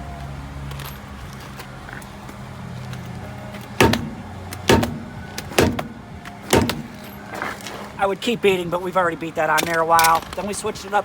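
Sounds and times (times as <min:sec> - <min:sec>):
steady low hum: 0:03.6 - 0:07.4
hammer blows on metal wheel: 0:03.8 - 0:07.2.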